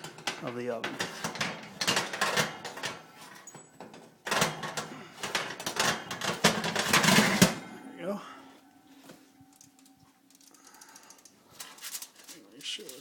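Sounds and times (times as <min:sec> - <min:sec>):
metal baking sheet clattering: 0:00.0 - 0:07.6.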